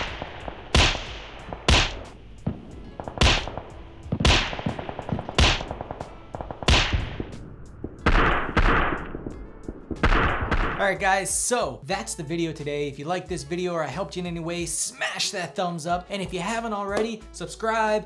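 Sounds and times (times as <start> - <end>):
whip-like crack sound effect: 0.0 - 2.2, 3.2 - 3.6, 5.4 - 5.7, 6.6 - 7.4.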